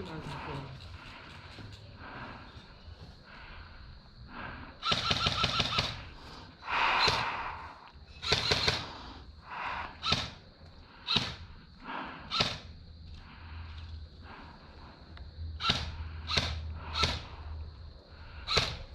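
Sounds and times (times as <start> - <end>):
airsoft gun firing: 4.8 - 6.0, 8.2 - 8.9, 10.0 - 10.4, 11.1 - 11.5, 12.3 - 12.7, 15.6 - 17.3.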